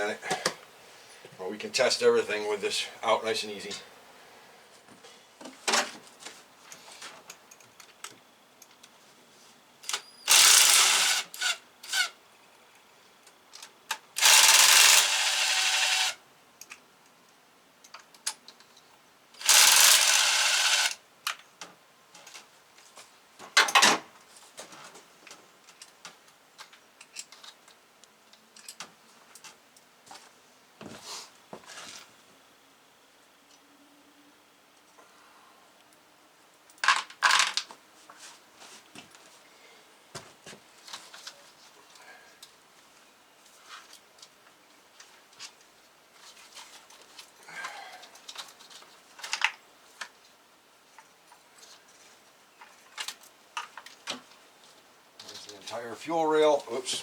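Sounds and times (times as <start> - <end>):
handheld power tool whirring: 9.9 - 12.2, 14.2 - 16.2, 19.4 - 21.0.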